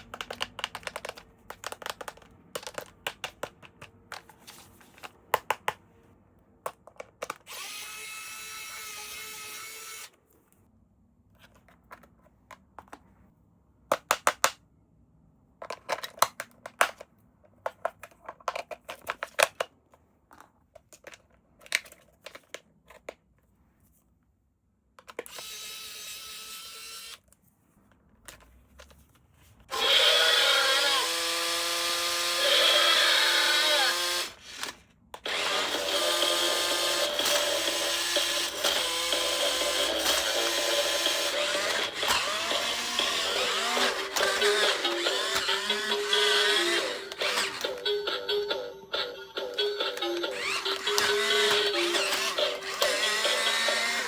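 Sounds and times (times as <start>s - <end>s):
small whirring motor: 7.5s - 10.1s, 25.3s - 27.2s, 29.7s - 47.8s, 50.3s - 54.0s
toy electronic music and effects: 35.3s - 54.0s.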